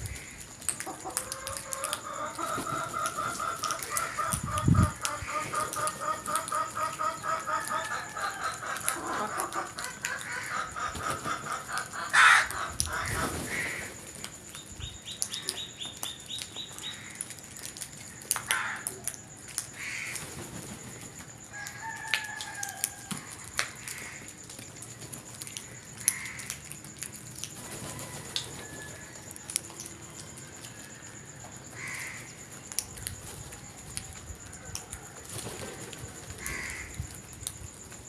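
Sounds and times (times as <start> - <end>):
birds calling: 1.5 - 13.9.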